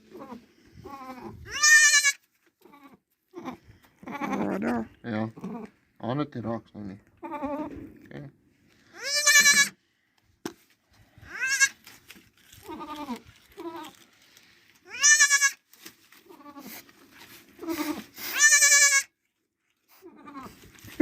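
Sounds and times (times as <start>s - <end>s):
goat kids bleating: 0.1s - 4.7s, 9.0s - 9.8s, 11.3s - 11.8s, 12.6s - 14.0s, 14.9s - 15.6s, 17.6s - 19.1s.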